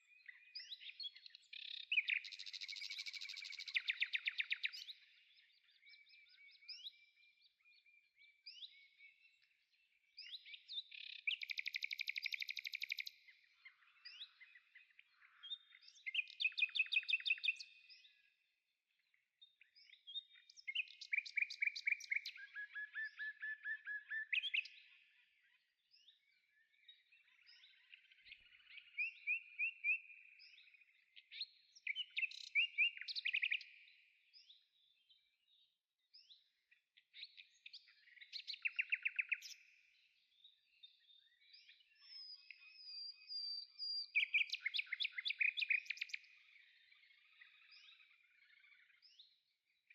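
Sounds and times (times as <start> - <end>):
songbird trilling and chirping: 0.1 - 7.8, 10.2 - 18.2, 19.6 - 25.0, 26.0 - 35.6, 37.2 - 49.9.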